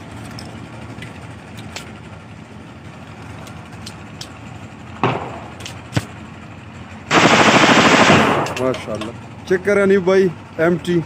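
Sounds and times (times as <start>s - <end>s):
pistol clacking: 8.3s - 8.9s.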